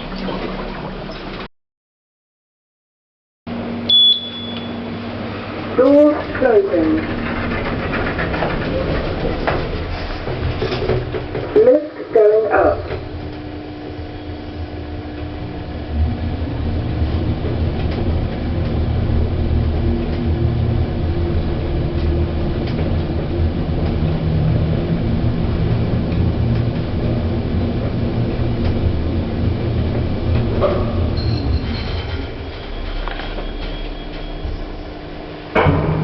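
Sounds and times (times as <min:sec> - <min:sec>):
lift car low rumble: 0:00.0 - 0:01.5, 0:03.5 - 0:36.0
faint hum: 0:10.8 - 0:36.0.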